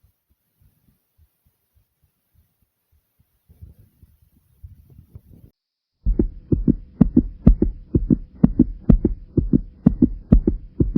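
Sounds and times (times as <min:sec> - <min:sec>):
faint low rumbling: 0:06.1 - 0:10.9
heartbeat thumps: 0:06.1 - 0:10.9.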